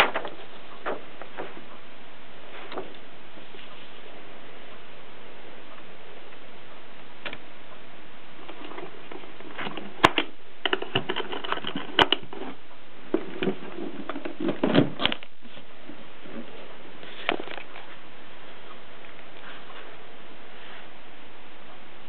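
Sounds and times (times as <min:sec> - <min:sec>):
steady hiss: 0:14.9 - 0:22.0.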